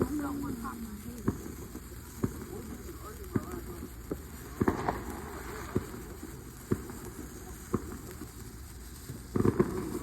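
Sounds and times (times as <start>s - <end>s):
fireworks popping: 0.0s - 10.0s
steady background hiss: 0.0s - 10.0s.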